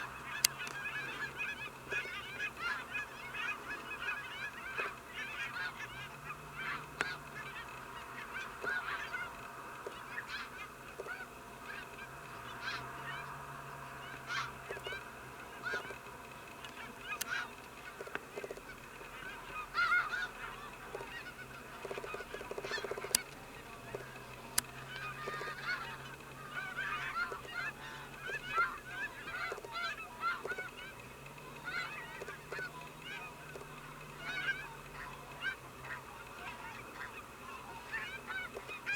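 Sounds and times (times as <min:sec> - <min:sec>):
geese honking: 0:00.0 - 0:38.9
sharp clicks: 0:00.4 - 0:00.8, 0:15.7 - 0:19.2, 0:20.8 - 0:25.6, 0:29.4 - 0:29.8, 0:32.2 - 0:34.1.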